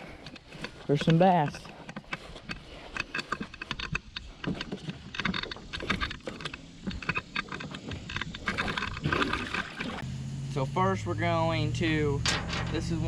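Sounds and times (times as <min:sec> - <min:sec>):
knocking and clattering in a boat: 0:00.1 - 0:10.0.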